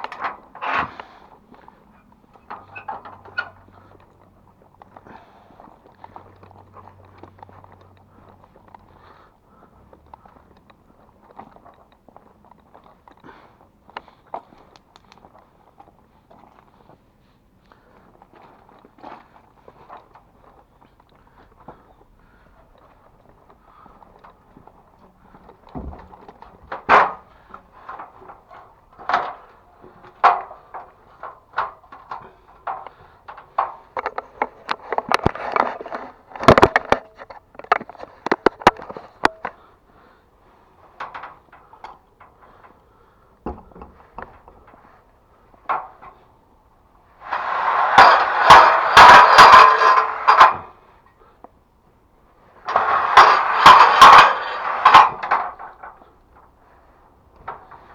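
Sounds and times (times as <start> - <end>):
dense rattling and scraping: 0.0 - 4.1, 24.9 - 39.6, 47.2 - 50.8, 52.5 - 57.9
metal and wooden clicks and knocks: 0.0 - 5.0, 24.2 - 39.6, 40.9 - 42.8, 43.4 - 44.9, 45.6 - 46.2, 47.2 - 50.7, 52.6 - 57.9.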